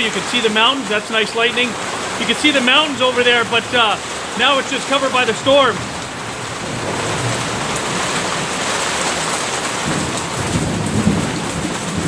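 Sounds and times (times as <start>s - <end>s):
heavy rain pouring: 0.0s - 12.0s
low rumble of thunder: 9.6s - 12.0s.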